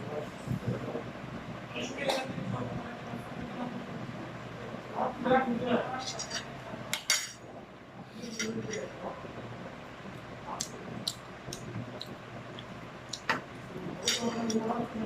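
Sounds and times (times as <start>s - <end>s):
cutlery clinking against dishes: 6.0s - 7.4s, 8.2s - 8.9s, 14.0s - 14.7s.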